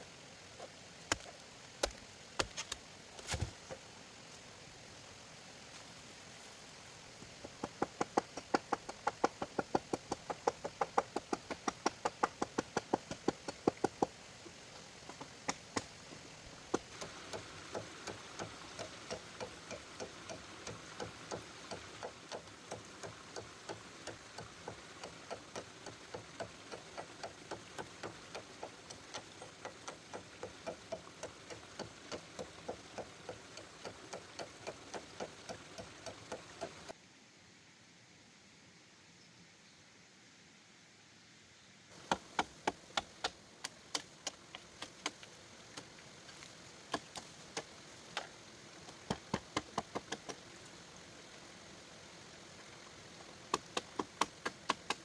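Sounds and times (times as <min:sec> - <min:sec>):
rapid regular knocking: 0:07.4 - 0:14.1, 0:42.0 - 0:45.3.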